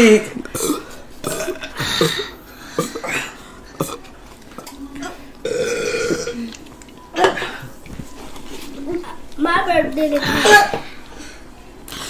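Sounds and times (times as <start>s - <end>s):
person burping: 0.0s - 4.1s, 5.0s - 6.6s, 10.2s - 10.9s.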